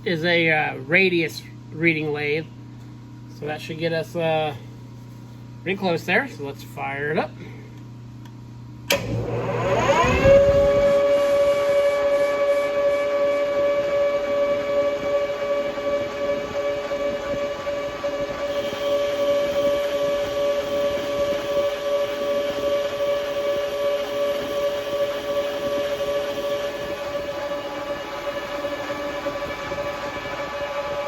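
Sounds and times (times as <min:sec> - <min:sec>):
metal lathe whining: 0:09.2 - 0:31.0.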